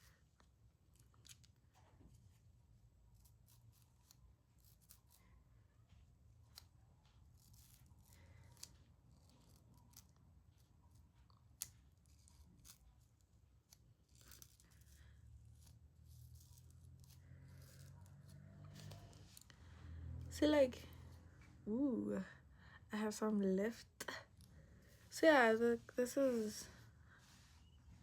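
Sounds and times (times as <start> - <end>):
comb scratching and clicking: 0.0 - 21.7
low steady hum: 0.0 - 28.0.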